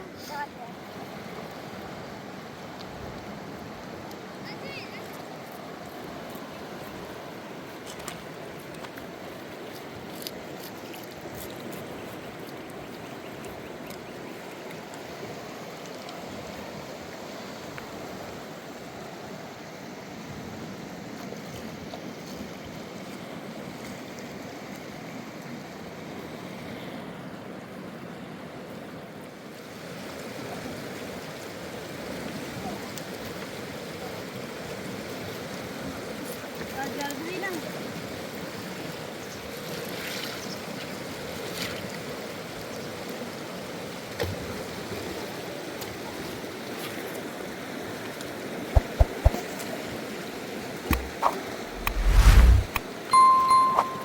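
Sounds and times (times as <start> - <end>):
river water rushing: 50.9 - 54.0.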